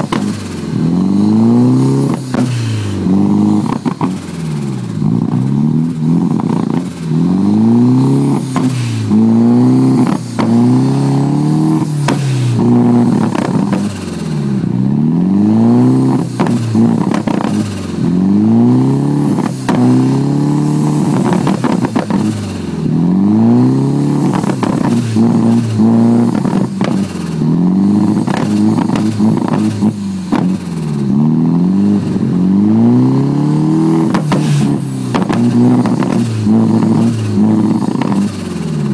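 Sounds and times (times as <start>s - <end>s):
car engine rough idle: 0.0s - 15.0s, 24.2s - 32.3s, 34.0s - 38.9s.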